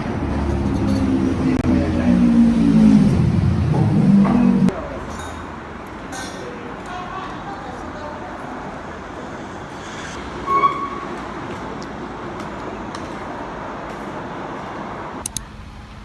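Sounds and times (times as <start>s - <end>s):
vehicle ride rumble: 0.0s - 4.9s.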